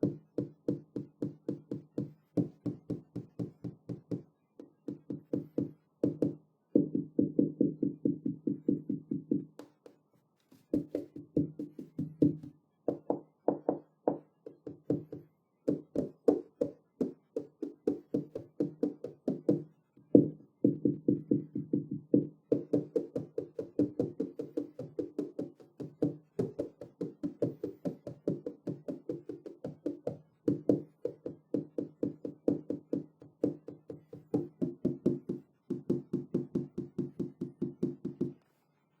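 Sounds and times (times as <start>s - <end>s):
tapping on glass window: 21.6s - 38.4s.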